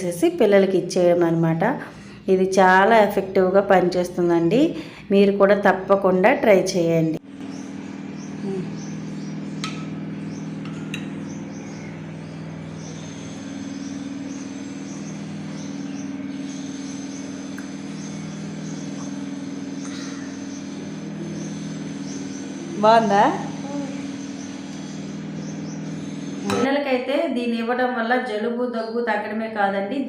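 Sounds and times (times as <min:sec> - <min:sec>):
steady low hum: 0:00.0 - 0:30.0
insect chirping: 0:07.4 - 0:22.8.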